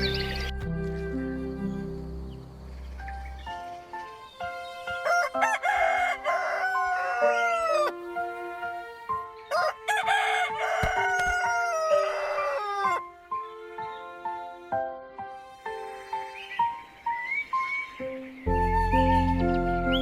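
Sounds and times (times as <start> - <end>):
soft background music: 0.0 - 20.0
rooster crowing: 5.0 - 8.0, 9.5 - 13.1.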